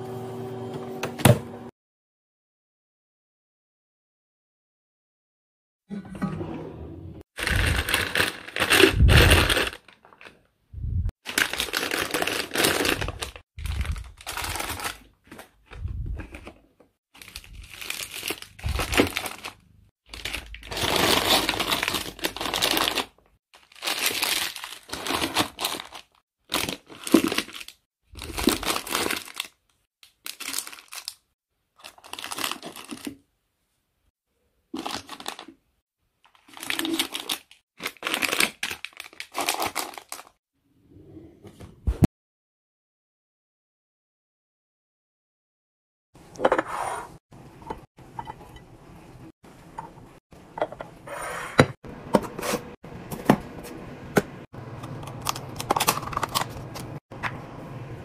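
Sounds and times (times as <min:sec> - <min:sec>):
plastic packaging crinkling: 0:07.4 - 0:10.4, 0:11.2 - 0:16.6, 0:17.2 - 0:33.2, 0:34.8 - 0:35.6, 0:36.3 - 0:40.4, 0:54.8 - 0:57.0.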